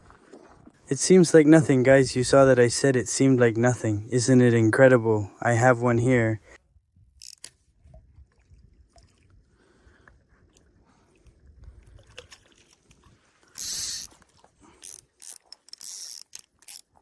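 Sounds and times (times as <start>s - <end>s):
fishing reel clicking and ratcheting: 7.2s - 7.6s, 13.6s - 14.1s, 14.8s - 17.0s
short hissing bursts: 13.6s - 14.1s.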